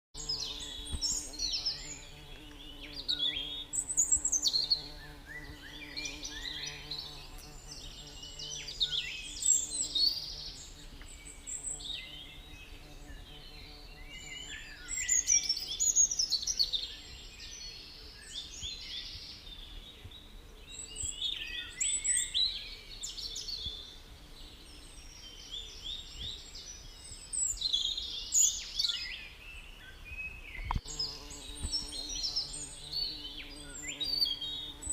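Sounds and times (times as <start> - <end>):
birds singing and chirping: 0.2 - 34.9.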